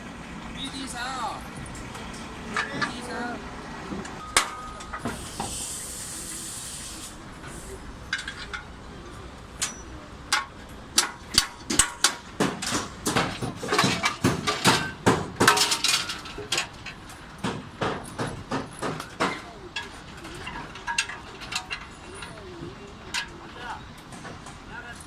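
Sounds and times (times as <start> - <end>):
brief hiss: 5.0 - 7.8
hammer blows on metal panels: 9.6 - 16.8, 17.4 - 24.6.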